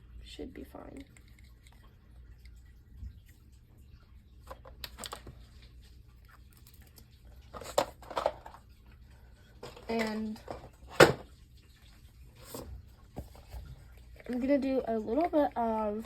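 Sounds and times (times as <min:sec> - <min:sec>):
containers and utensils handled: 0:06.3 - 0:08.7, 0:09.5 - 0:11.3, 0:12.4 - 0:16.0.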